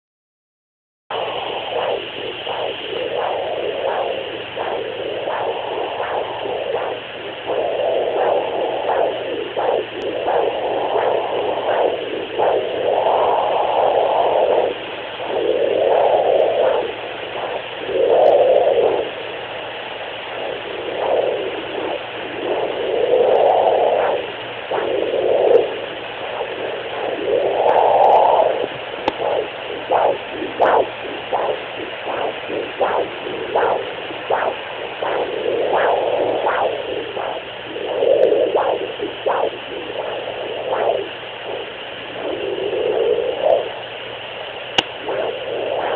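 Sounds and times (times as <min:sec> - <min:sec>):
fetal doppler whooshing: 0:01.1 - 0:43.8, 0:44.8 - 0:45.9
steady hum: 0:01.1 - 0:45.9.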